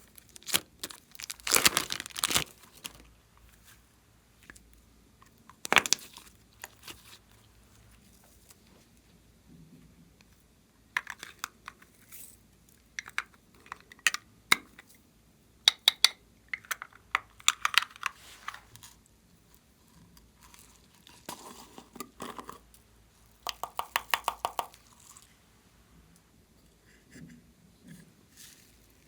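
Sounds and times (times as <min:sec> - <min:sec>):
slime squeezed with sticky pops: 0:00.2 - 0:03.0.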